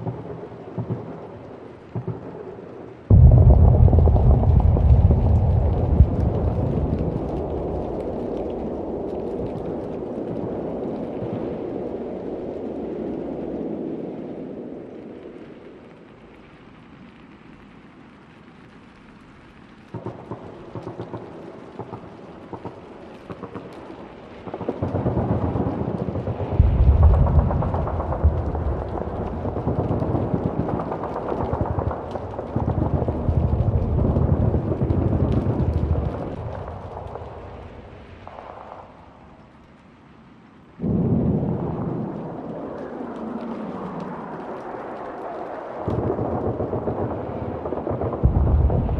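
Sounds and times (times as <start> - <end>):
distant explosions rumbling: 0.0 - 12.1, 19.9 - 39.7, 40.8 - 48.9
crackling noise: 0.0 - 48.9
heavy rumbling booms: 3.1 - 8.4, 24.8 - 30.8, 31.4 - 38.7, 46.0 - 48.9.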